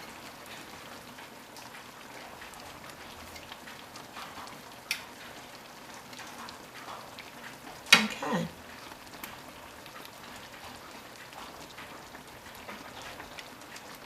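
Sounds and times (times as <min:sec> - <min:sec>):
sauce sizzling in a skillet: 0:00.0 - 0:14.0.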